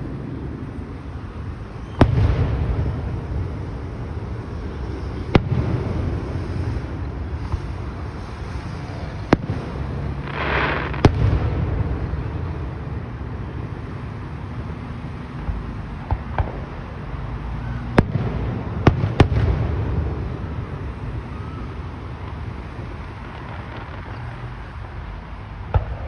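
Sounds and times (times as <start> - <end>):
fireworks bangs: 0.0 - 17.0, 17.6 - 25.0, 25.6 - 26.0
firework hissing rush: 1.0 - 16.8, 18.7 - 25.0
soft firework pops: 7.4 - 7.8, 9.3 - 11.5, 15.3 - 16.8, 23.0 - 24.5, 25.7 - 26.0.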